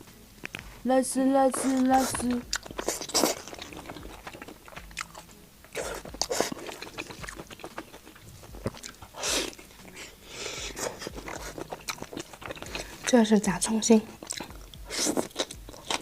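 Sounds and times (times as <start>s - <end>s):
crunchy food being chewed: 1.5s - 16.0s
wet mouth clicks: 1.6s - 10.0s, 10.7s - 13.1s, 14.1s - 16.0s.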